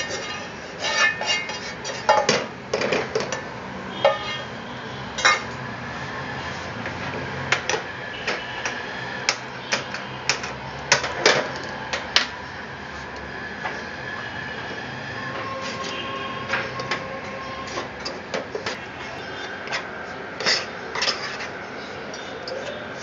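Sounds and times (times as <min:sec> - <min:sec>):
utensil scraping and knocking pan: 0:00.0 - 0:03.4, 0:15.4 - 0:22.8.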